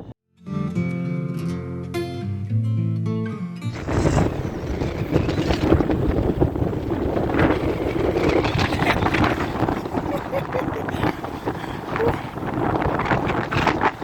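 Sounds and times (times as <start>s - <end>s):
acoustic guitar music: 0.4s - 7.2s
gusting wind on microphone: 3.7s - 14.0s.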